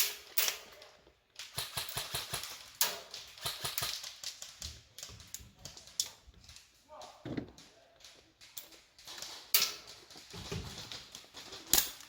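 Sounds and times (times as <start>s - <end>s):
airsoft guns firing: 1.4s - 4.5s.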